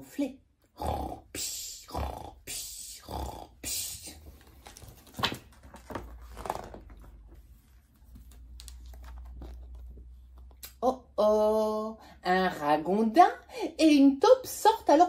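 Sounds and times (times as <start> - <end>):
imitated bear snoring: 0.8 - 1.3, 1.9 - 2.4, 3.0 - 3.6.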